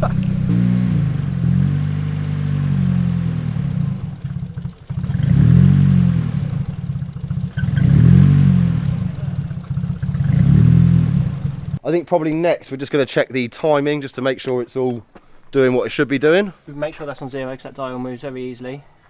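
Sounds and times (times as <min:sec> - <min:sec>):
car engine revving unevenly: 0:00.0 - 0:11.8.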